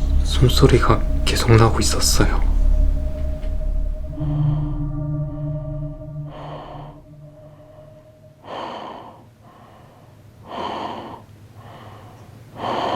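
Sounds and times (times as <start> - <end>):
low sustained tone: 0.0 - 9.4
heavy breathing close to the ear: 2.3 - 12.9.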